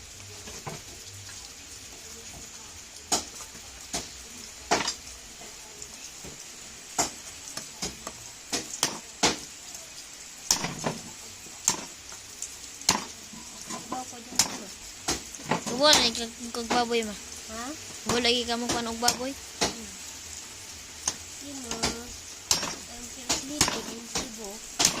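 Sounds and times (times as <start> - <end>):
steady hiss: 0.0 - 25.0.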